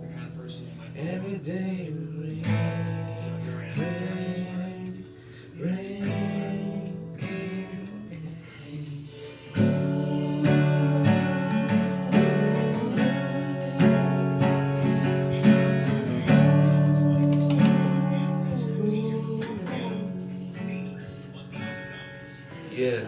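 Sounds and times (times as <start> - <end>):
acoustic guitar strumming: 0.0 - 23.0.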